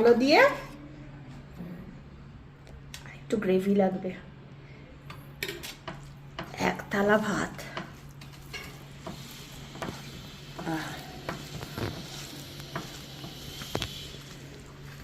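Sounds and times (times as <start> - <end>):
wet stirring and squishing: 7.7 - 15.0.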